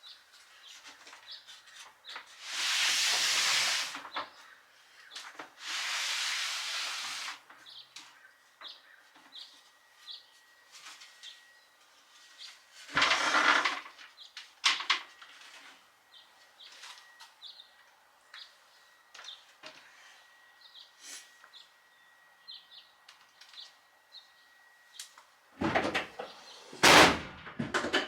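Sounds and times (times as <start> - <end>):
faint steady high tone: 7.8 - 12.7, 15.4 - 25.6
bird chirps: 16.1 - 25.0.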